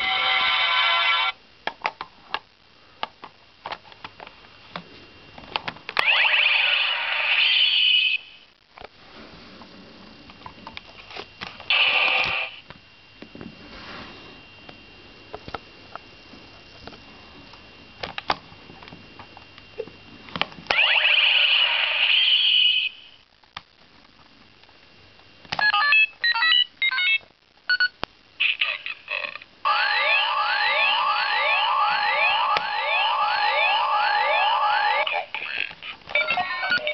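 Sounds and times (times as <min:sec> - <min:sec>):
toy belt electronic sound effects: 0:06.0 - 0:08.2, 0:20.7 - 0:23.0, 0:28.4 - 0:36.9
rising siren-like wail: 0:29.7 - 0:35.2.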